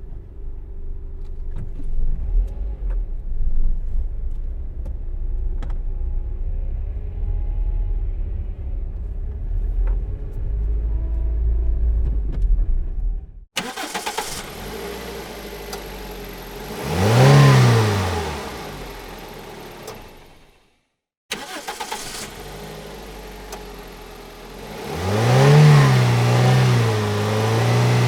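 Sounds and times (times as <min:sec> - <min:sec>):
low engine rumble: 0:00.0 - 0:13.5
car engine cranking and starting: 0:08.3 - 0:20.7, 0:21.3 - 0:28.0.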